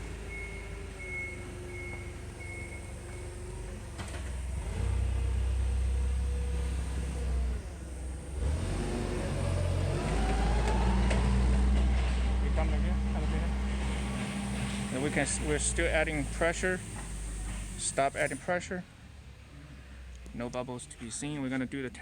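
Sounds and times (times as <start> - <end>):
air pump humming: 13.1 - 18.4.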